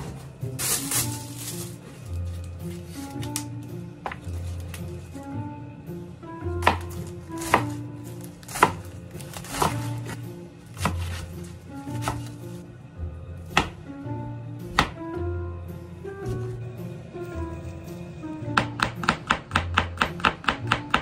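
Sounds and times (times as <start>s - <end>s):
background music: 0.0s - 21.0s
knife chopping on cutting board: 6.6s - 7.8s, 8.4s - 12.4s, 13.5s - 13.8s, 14.7s - 15.0s, 18.6s - 21.0s.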